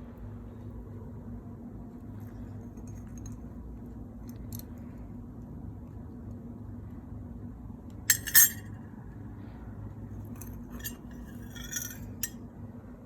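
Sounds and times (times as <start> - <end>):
hard objects clinking: 8.1 - 8.6, 10.4 - 12.4
steady low hum: 8.1 - 8.9, 10.0 - 12.4.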